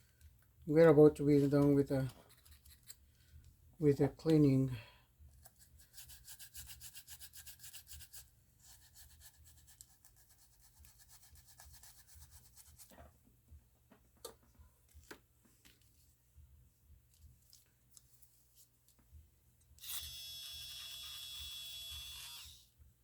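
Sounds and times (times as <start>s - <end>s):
brush scrubbing: 5.5s - 13.0s.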